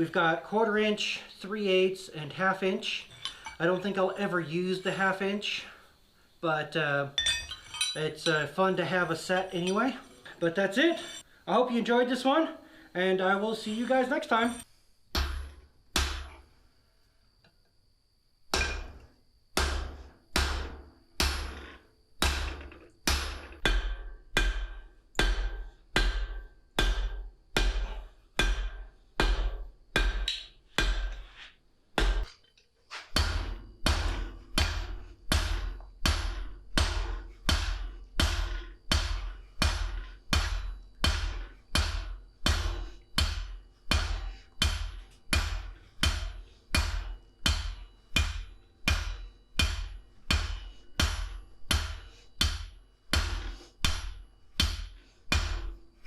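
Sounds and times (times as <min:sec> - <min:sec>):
percussive beat of hammer-like strikes: 0:33.2 - 0:55.6.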